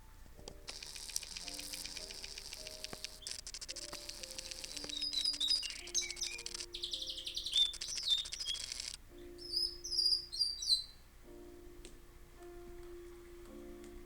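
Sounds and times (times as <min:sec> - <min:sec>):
soft piano notes: 0:00.0 - 0:14.0
canary singing trills: 0:00.7 - 0:11.1.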